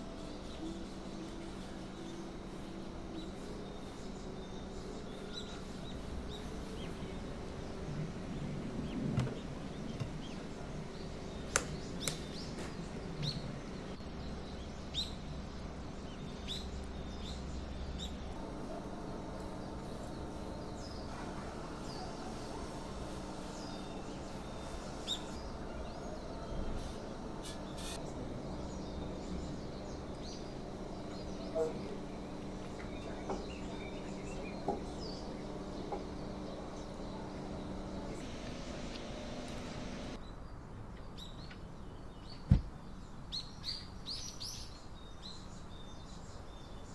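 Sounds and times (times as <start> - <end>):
steady low hum: 0.0 - 40.6
sharp clicks: 11.5 - 12.4.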